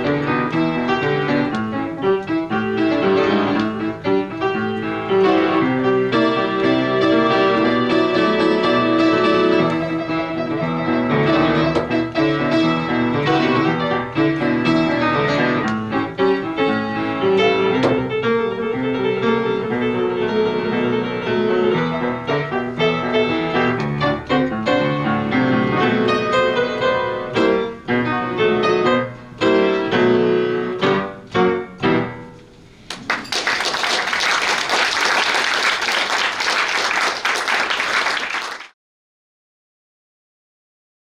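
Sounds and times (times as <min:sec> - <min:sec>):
audience applause: 0:32.9 - 0:38.8.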